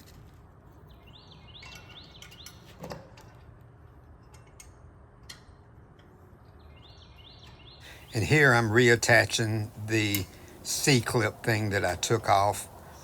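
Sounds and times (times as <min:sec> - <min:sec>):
bird chirping: 0:06.6 - 0:13.0.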